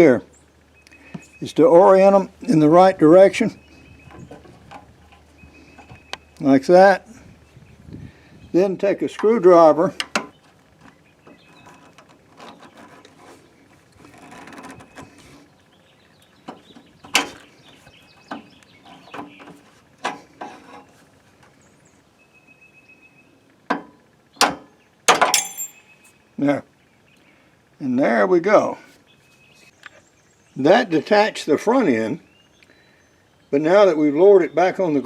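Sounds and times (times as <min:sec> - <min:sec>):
metal clicks and scrapes: 0:10.0 - 0:15.5, 0:18.4 - 0:21.6.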